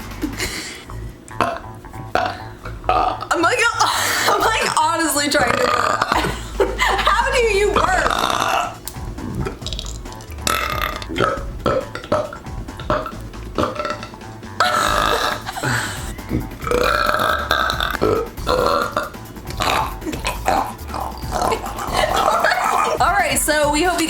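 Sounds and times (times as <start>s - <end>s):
man burping: 9.4s - 23.0s.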